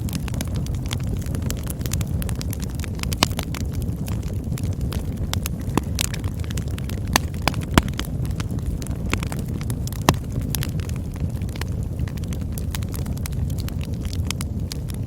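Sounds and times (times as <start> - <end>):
burning wood crackling and popping: 0.0 - 15.0
campfire flames rumbling: 0.0 - 15.0.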